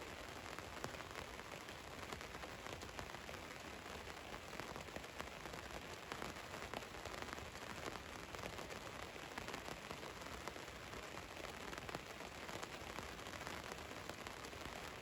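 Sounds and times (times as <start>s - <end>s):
rain on a van roof: 0.0s - 15.0s.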